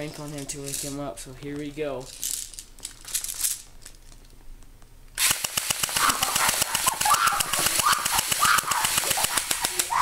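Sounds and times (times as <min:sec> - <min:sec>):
rapid rifle shots: 0:05.2 - 0:10.0.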